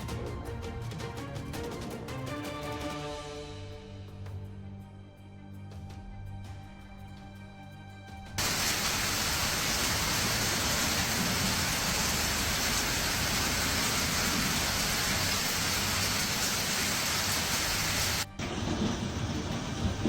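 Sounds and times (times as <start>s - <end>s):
background music: 0.0s - 20.0s
heavy rain downpour hiss: 8.4s - 20.0s.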